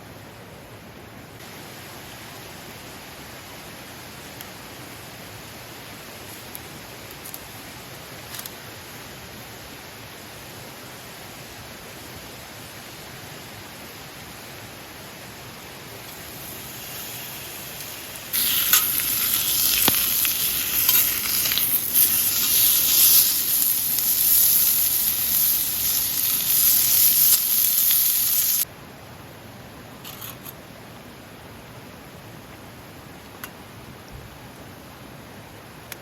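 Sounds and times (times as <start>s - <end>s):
faint steady hiss: 0.0s - 36.0s
food frying sizzle: 15.9s - 28.7s.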